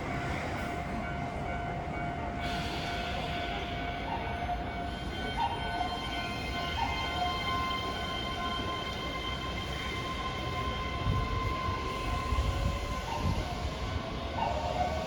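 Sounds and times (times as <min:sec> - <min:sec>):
train running gear rumble: 0:00.0 - 0:15.0.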